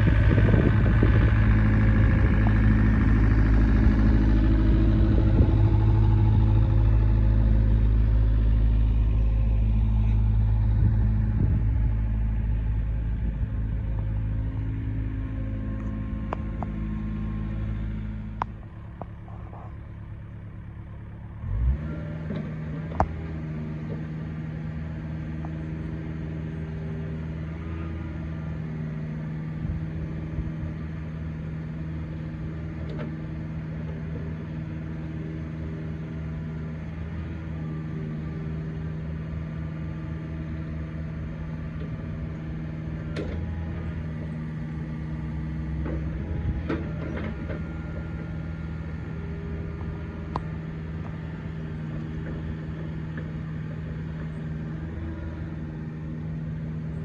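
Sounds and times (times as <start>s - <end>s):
diesel engine running: 0.0s - 57.0s
engine thump: 45.8s - 48.2s.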